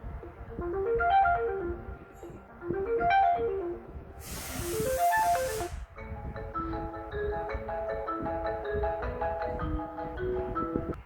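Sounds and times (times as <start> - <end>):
melodic phone ringtone: 5.0 - 11.0.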